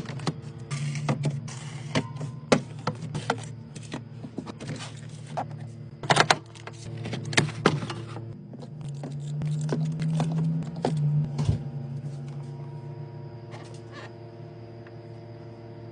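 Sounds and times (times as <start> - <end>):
grocery items knocking and clinking: 0.0 - 11.7
steady low hum: 0.0 - 15.9.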